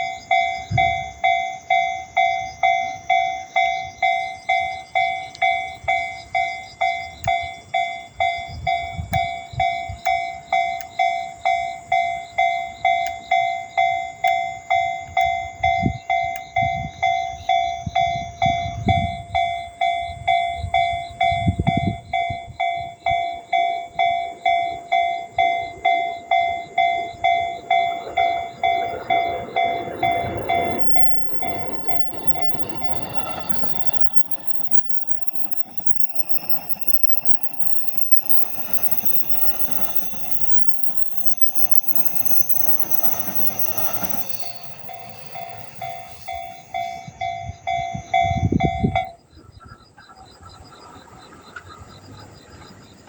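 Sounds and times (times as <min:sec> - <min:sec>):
level-crossing warning bell: 0:00.0 - 0:53.0
rushing noise: 0:26.6 - 0:47.4.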